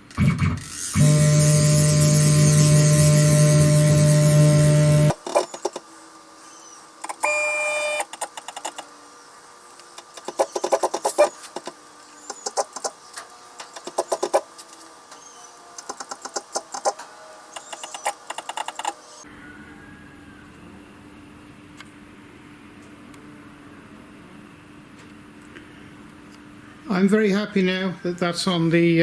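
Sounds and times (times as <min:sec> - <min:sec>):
stepper motors clicking: 0:00.0 - 0:19.2
motor whine: 0:00.0 - 0:19.3.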